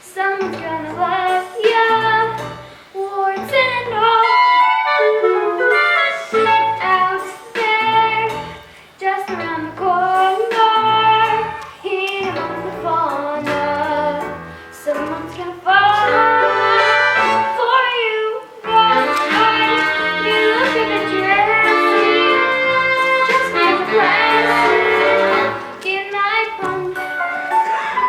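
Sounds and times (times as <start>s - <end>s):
horns playing melody: 4.4s - 6.9s, 16.1s - 17.8s, 18.7s - 25.8s
bass line: 18.7s - 25.8s.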